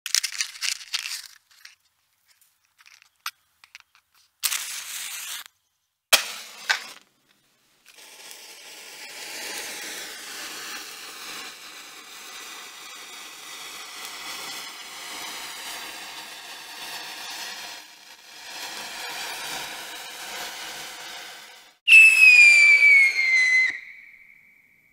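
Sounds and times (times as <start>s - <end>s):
fireworks crackling and popping: 0.1s - 5.5s, 6.1s - 24.6s
firework bang: 6.1s - 7.0s
firework hiss: 6.1s - 7.0s, 7.8s - 24.6s.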